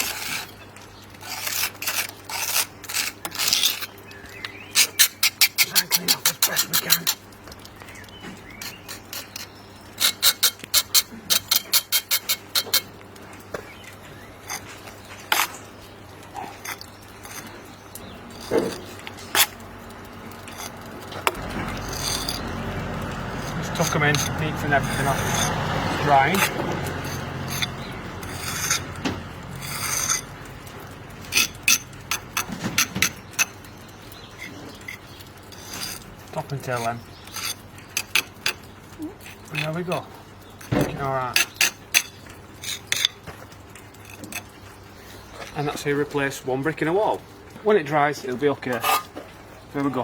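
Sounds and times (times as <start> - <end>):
trowel strokes cleaning brickwork: 0.0 - 0.6, 1.2 - 4.0, 4.8 - 7.2, 8.6 - 12.9, 20.4 - 33.6.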